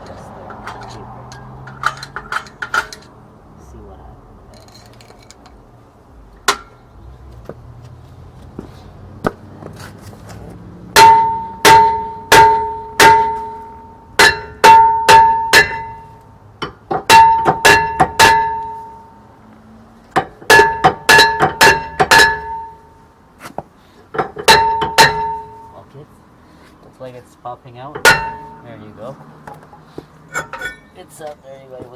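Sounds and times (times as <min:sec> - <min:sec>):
hammer striking ringing metal disc: 0:11.0 - 0:19.2, 0:20.2 - 0:22.9, 0:24.2 - 0:25.8, 0:28.0 - 0:28.7.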